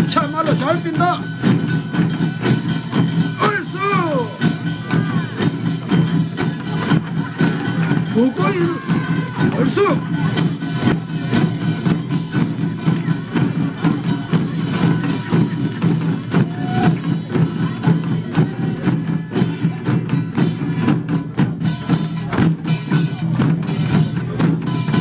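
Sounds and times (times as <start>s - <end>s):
percussion band on gongs and drums: 0.0s - 25.0s.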